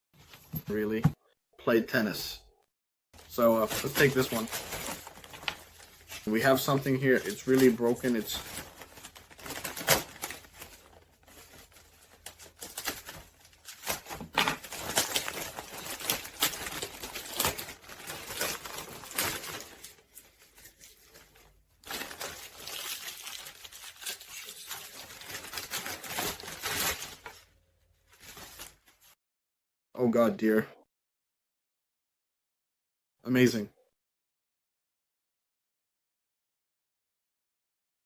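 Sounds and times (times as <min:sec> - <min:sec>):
packaging crinkling: 0:03.2 - 0:27.5, 0:28.1 - 0:29.1.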